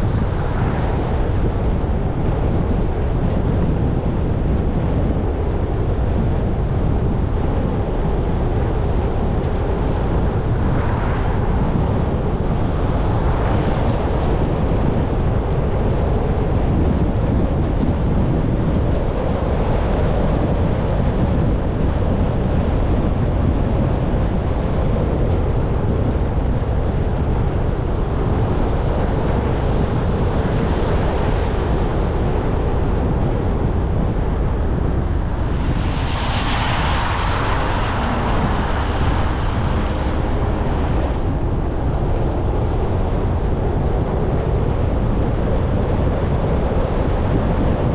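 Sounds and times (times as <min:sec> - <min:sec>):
vehicles passing: 0:33.7 - 0:43.5.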